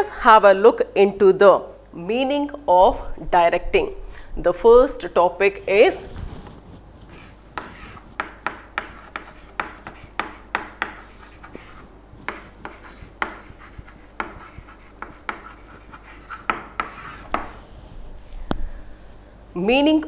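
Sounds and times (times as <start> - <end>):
writing on a board: 7.1 - 17.6.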